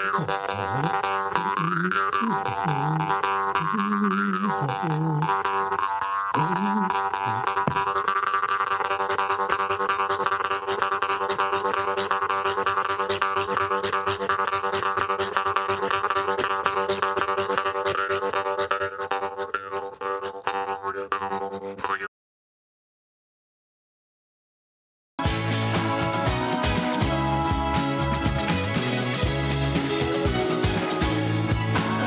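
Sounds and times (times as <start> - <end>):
percussive beat: 25.2 - 32.0.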